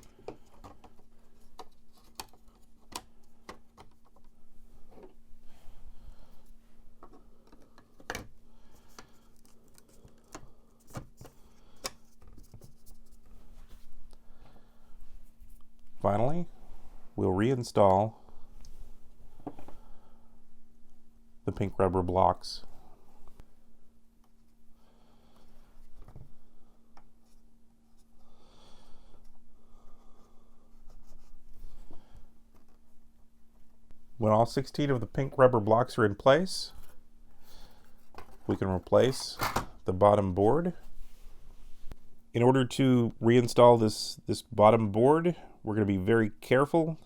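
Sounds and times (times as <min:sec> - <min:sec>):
parts rustling in hands: 0:00.0 - 0:19.9, 0:35.8 - 0:39.9
faint steady hum: 0:00.0 - 0:47.0.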